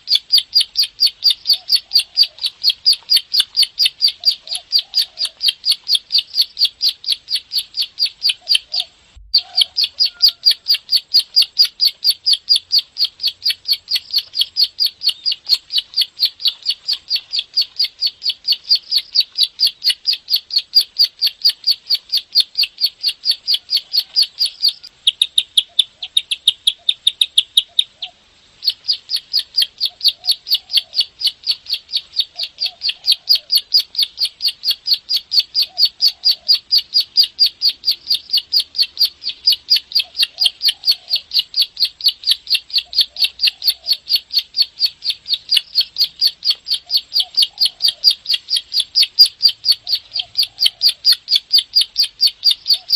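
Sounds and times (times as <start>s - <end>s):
bird calling in rapid clicks: 0.1s - 52.9s.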